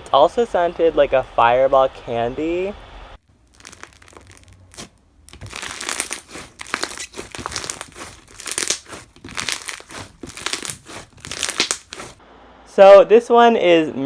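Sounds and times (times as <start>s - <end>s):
crunchy slime crackling: 2.4s - 12.2s.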